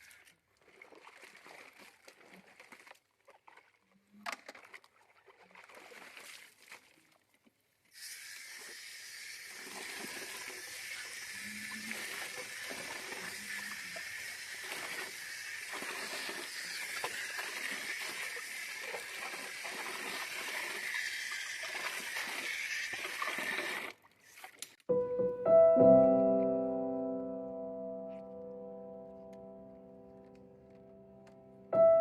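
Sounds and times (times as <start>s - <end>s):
water splashes: 0.0s - 24.8s
running water hissing: 7.9s - 24.4s.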